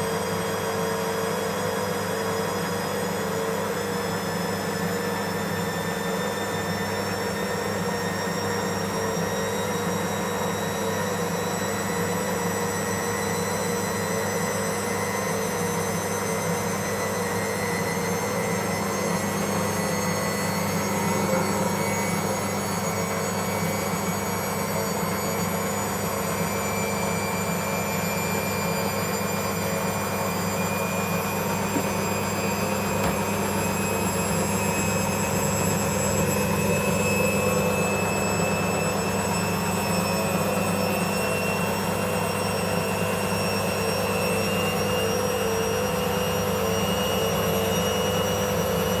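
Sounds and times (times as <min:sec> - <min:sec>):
washing machine spinning: 0:00.0 - 0:49.0.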